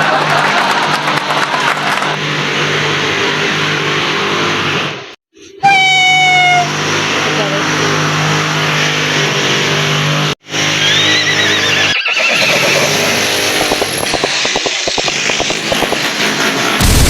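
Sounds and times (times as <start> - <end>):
electric drill motor whine: 10.0 - 16.2.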